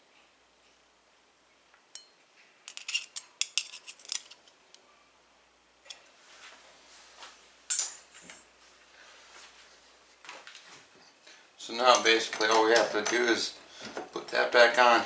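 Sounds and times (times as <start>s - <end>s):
metal door knob parts clicking: 12.0s - 13.4s.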